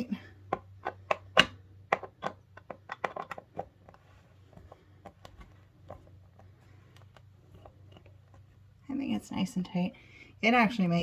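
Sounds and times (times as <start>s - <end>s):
screw being tightened: 0.5s - 3.7s.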